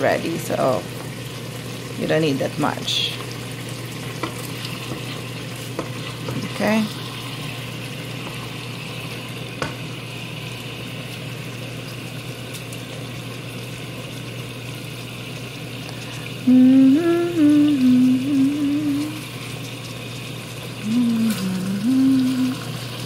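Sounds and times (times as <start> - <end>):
food sizzling in a frying pan: 0.0 - 23.0
person singing held notes: 20.8 - 22.6.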